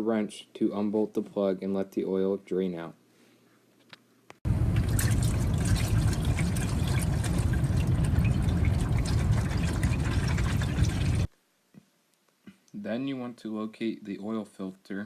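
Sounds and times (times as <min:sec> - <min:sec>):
oil pouring into a pan: 0:04.6 - 0:11.3.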